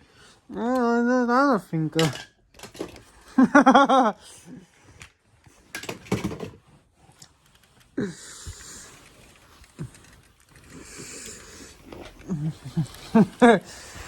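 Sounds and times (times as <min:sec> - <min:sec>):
person making wordless vocal sounds: 0:00.5 - 0:01.8.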